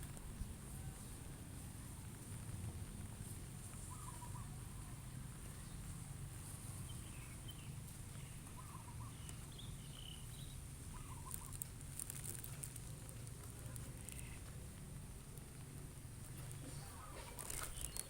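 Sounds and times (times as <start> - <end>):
faint bird calls: 3.8 - 6.0, 6.8 - 11.7, 14.0 - 14.5.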